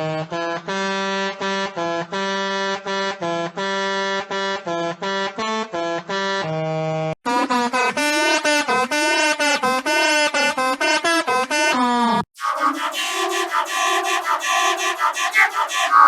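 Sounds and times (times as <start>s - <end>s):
bus horn tune of pitched notes: 12.4s - 16.0s.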